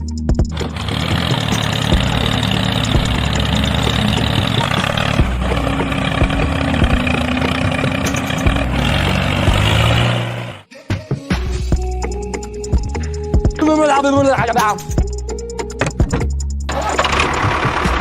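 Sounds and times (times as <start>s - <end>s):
mini tractor engine running: 0.5s - 10.6s, 16.7s - 18.0s
noisy rattle: 0.5s - 10.6s.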